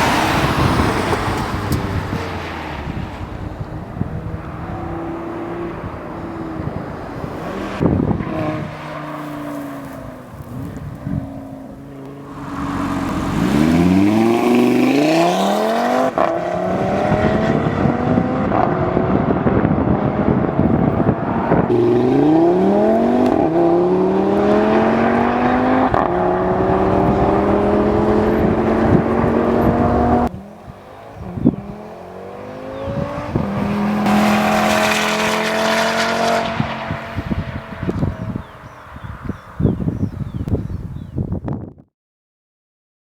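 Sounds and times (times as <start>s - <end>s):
car engine accelerating through gears: 0.0s - 40.0s.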